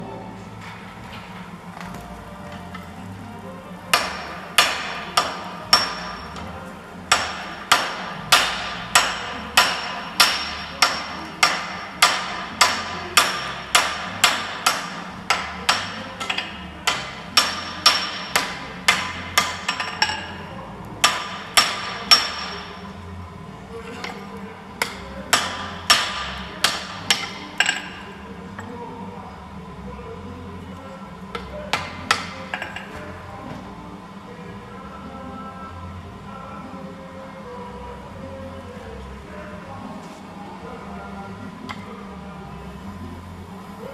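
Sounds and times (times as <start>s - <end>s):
hammer striking hot steel on anvil: 3.9s - 6.5s, 7.1s - 20.4s, 21.0s - 22.8s, 24.8s - 28.1s, 31.3s - 32.9s.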